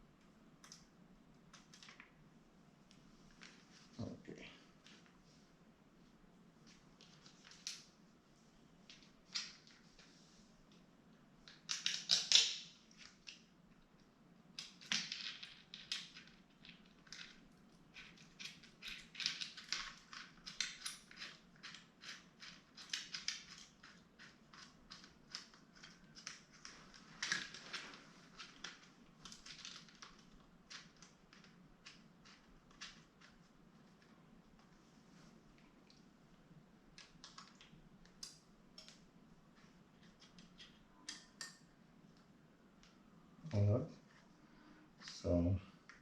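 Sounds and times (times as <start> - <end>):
plastic parts clicking and scraping: 14.6 - 34.8, 36.9 - 41.6.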